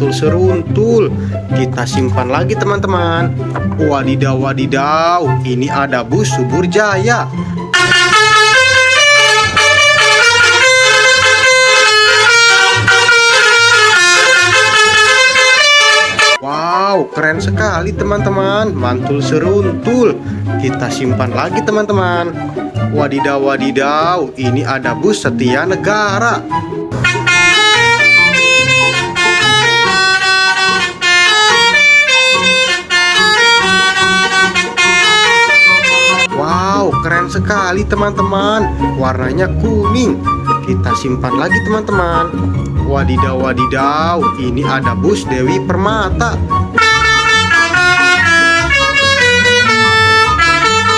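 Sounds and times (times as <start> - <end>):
multi-tone bus horn melody: 7.7 - 16.4, 26.9 - 36.4, 46.8 - 50.9.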